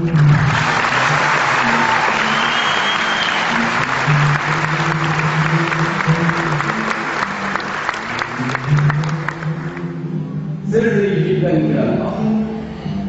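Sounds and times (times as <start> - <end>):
audience applause: 0.0 - 9.8
music with low sustained notes: 0.0 - 13.0.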